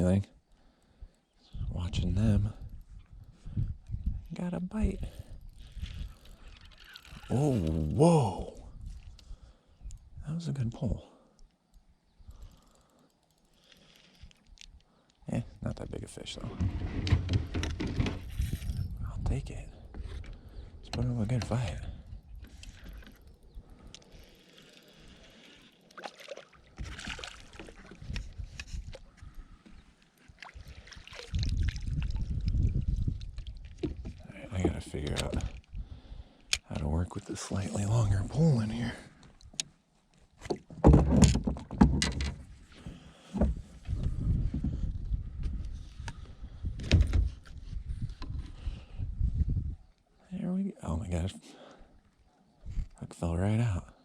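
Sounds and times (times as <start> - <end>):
water splashing around a kayak: 22.4 - 35.9.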